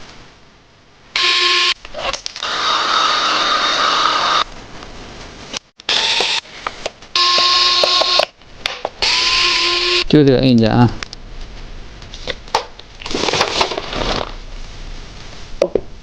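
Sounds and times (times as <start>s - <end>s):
small power tool motor whine: 1.2s - 1.8s, 2.4s - 4.4s, 5.9s - 6.4s, 7.2s - 8.3s, 9.0s - 10.0s.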